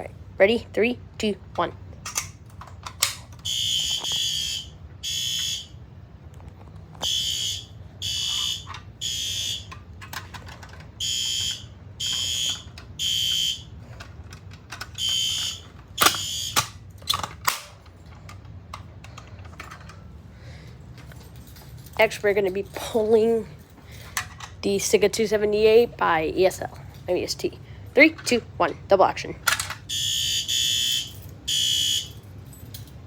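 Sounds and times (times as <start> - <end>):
fire alarm horn honking: 3.0 - 5.9, 7.0 - 9.9, 11.0 - 13.8, 15.0 - 16.8, 29.9 - 32.3
sharp clicks: 15.1 - 17.8.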